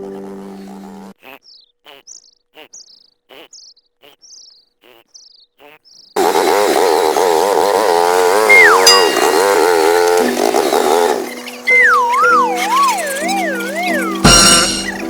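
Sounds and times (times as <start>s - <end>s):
small bird chirping: 1.2s - 6.2s, 8.3s - 15.0s
loud wavering sound: 8.5s - 10.4s, 11.4s - 15.0s.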